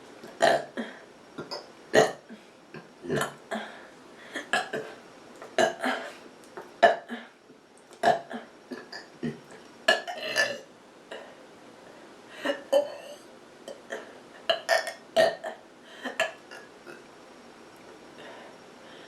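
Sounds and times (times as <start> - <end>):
person burping: 0.3 - 3.7, 4.4 - 5.0, 5.6 - 6.2, 8.0 - 10.7, 12.4 - 17.1.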